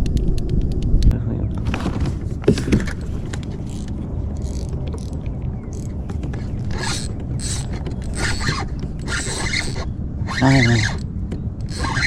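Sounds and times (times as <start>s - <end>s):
fishing reel ratcheting: 3.0s - 12.0s.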